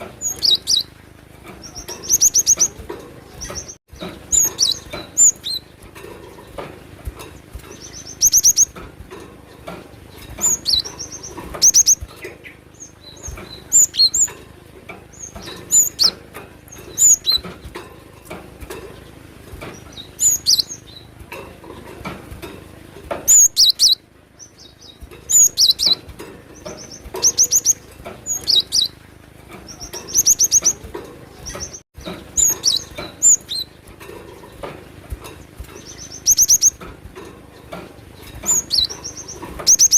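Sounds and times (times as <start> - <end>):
bird singing high ringing notes: 10.0 - 14.3, 35.7 - 36.8, 38.2 - 39.9.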